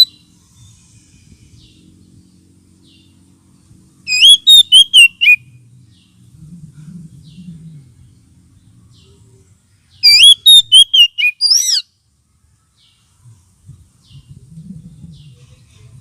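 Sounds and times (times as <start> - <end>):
bird singing whistled notes: 0.0 - 0.8, 4.1 - 5.5, 10.0 - 11.9.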